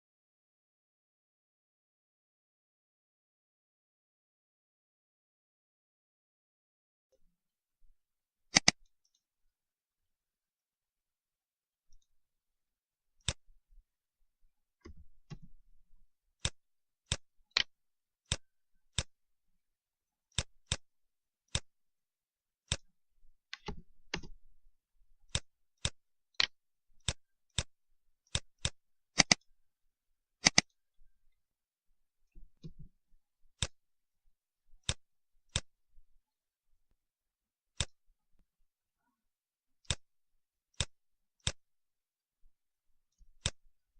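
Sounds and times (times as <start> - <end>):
mouse buttons clicking: 8.5 - 8.9, 23.5 - 24.4, 28.3 - 29.5, 30.4 - 30.8, 37.8 - 38.0.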